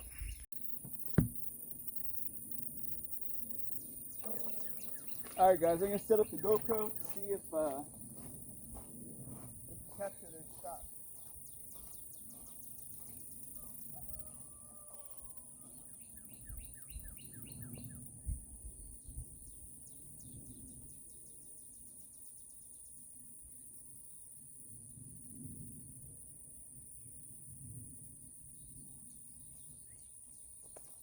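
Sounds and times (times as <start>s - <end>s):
wild birds singing: 0.0s - 18.4s
soft low thumps: 1.1s - 1.5s.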